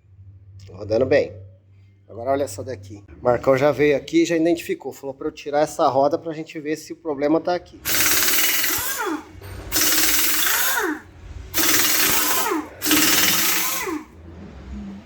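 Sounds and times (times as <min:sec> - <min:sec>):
impact wrench undoing wheel nuts: 0:07.8 - 0:14.1.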